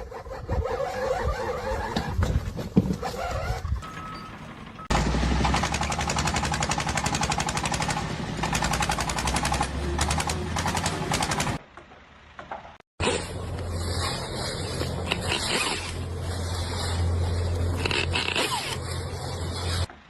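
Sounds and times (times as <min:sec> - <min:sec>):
steady engine hum: 0:01.7 - 0:20.0
rapid mechanical hammering: 0:05.3 - 0:11.6.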